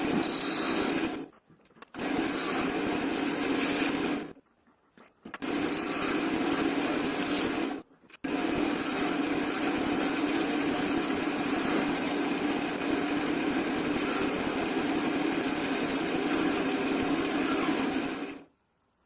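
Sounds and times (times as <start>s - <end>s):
machine humming: 5.4s - 18.5s.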